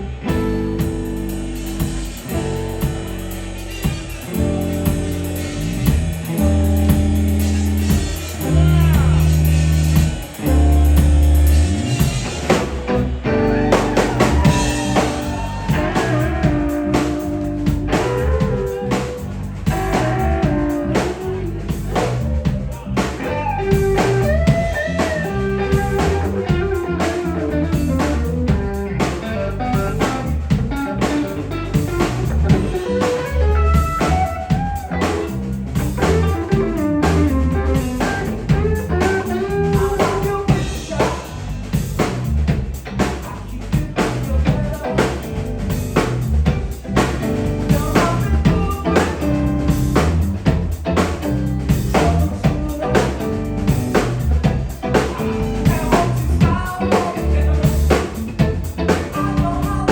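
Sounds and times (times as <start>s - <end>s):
guitar lead with bending notes: 0.0s - 40.9s
bass guitar: 0.0s - 59.9s
drum beat: 0.3s - 28.7s, 29.7s - 42.9s, 45.6s - 59.9s.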